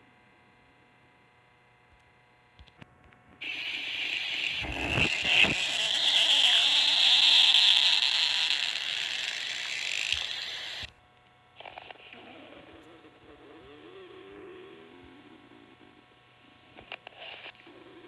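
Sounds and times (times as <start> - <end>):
cartoon stomach growl: 3.9 - 10.9, 11.7 - 16.0.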